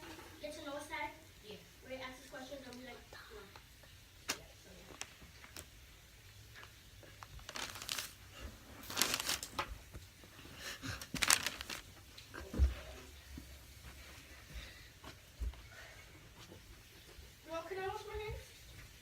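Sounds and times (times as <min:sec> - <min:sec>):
slime squelching: 0:06.4 - 0:09.6.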